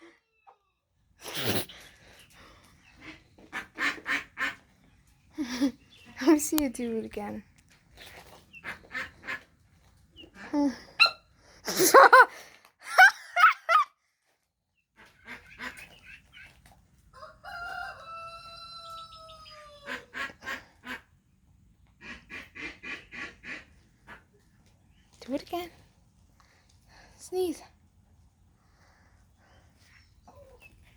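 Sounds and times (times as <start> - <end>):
chicken sneezing: 1.2 - 2.0
chicken calling: 15.0 - 21.0.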